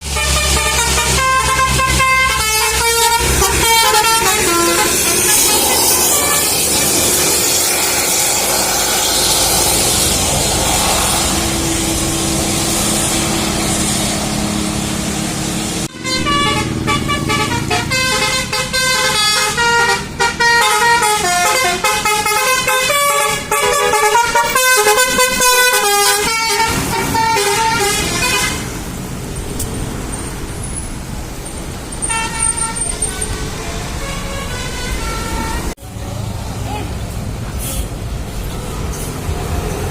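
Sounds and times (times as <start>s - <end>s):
bus multi-tone air horns: 0.0s - 9.8s, 15.8s - 28.9s, 32.0s - 35.8s
bus engine: 0.0s - 39.9s
road noise: 0.0s - 39.9s.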